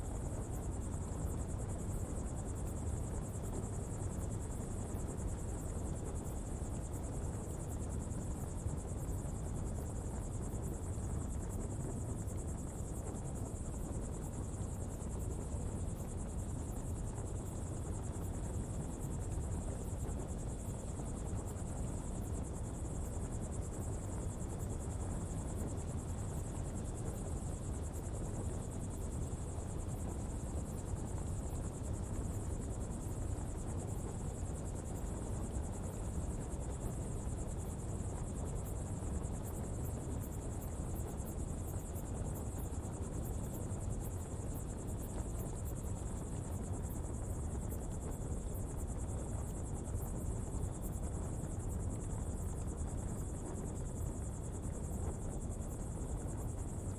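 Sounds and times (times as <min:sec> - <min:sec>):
fire burning with low rumble: 0:00.0 - 0:56.9.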